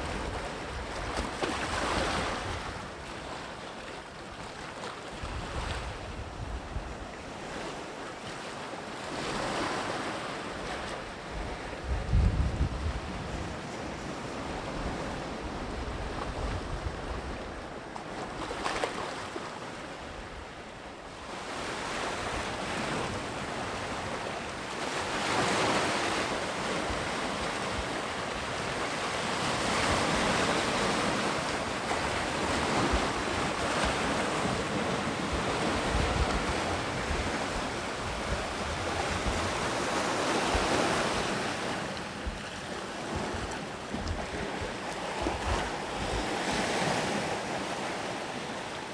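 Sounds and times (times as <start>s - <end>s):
sea waves breaking on shore: 0.0s - 48.9s
wind buffeting microphone: 5.1s - 7.6s, 11.2s - 17.9s, 22.2s - 48.0s.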